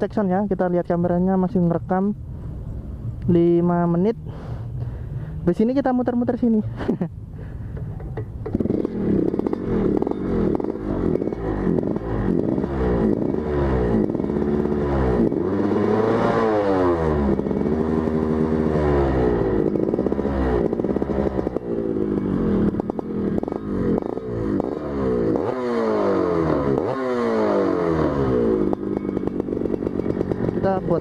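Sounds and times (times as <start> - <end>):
motorcycle engine accelerating: 8.0 - 31.0.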